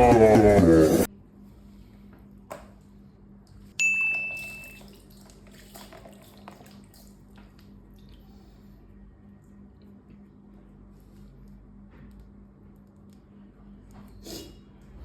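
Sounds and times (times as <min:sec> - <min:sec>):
sharp high ding: 0:03.8 - 0:04.8.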